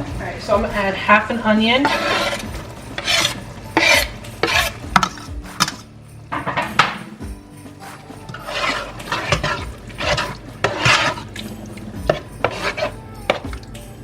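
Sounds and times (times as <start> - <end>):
spoon stirring and scraping pot: 1.1 - 7.0, 7.7 - 14.0
spoon knocking against pot: 7.9 - 13.8.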